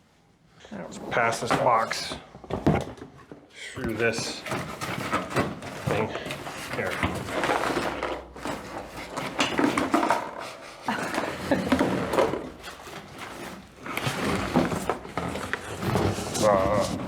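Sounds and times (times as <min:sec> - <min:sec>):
cardboard box scraping and knocking: 0:03.8 - 0:17.0.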